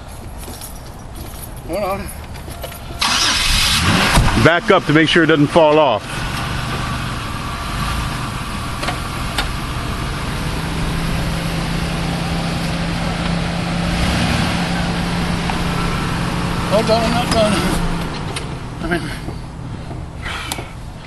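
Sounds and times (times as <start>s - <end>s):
car engine running: 3.0s - 21.0s.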